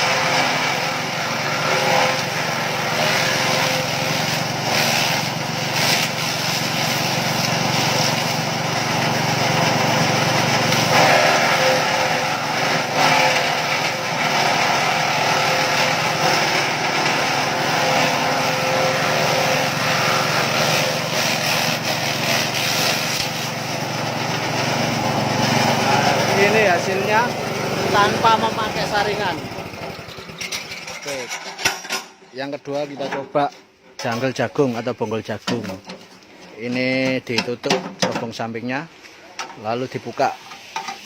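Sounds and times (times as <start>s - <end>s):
petrol engine running: 0.0s - 31.0s.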